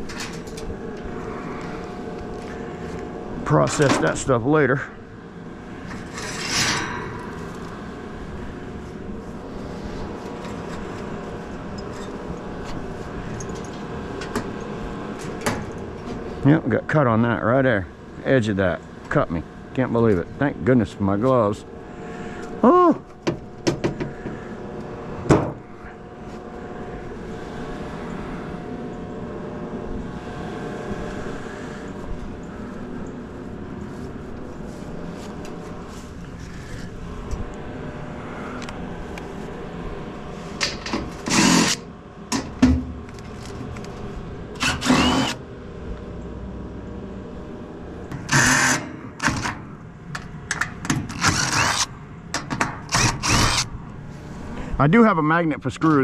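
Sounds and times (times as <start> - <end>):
cordless drill whining: 41.2 - 41.8, 44.6 - 45.4, 48.3 - 49.5, 51.1 - 51.9, 52.9 - 53.7.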